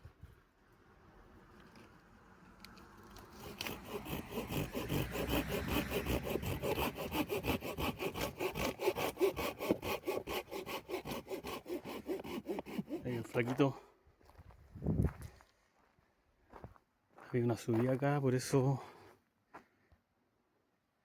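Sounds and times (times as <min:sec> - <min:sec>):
hand saw cutting wood: 0:03.1 - 0:13.7.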